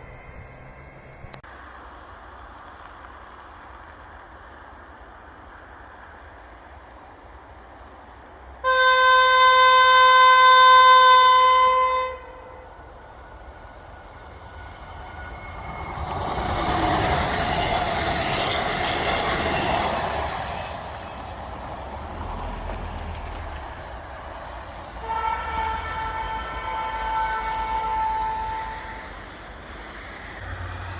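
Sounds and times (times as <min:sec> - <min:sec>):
train wheels on rails passing: 0:00.0 - 0:01.4, 0:09.2 - 0:30.9
train air horn blast: 0:08.6 - 0:12.9, 0:25.0 - 0:29.2.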